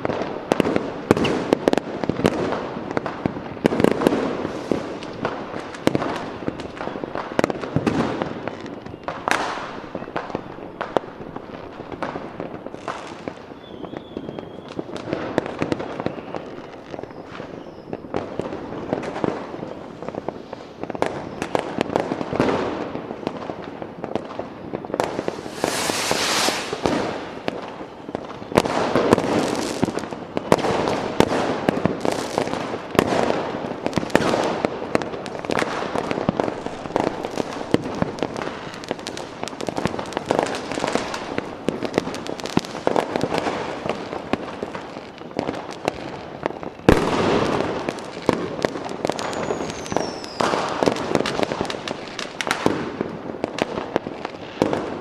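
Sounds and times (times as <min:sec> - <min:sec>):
fireworks bangs and crackling: 0:00.0 - 0:55.0
falling whistle: 0:13.6 - 0:14.8, 0:25.3 - 0:27.0
sharp loud firework bang: 0:25.0 - 0:27.5.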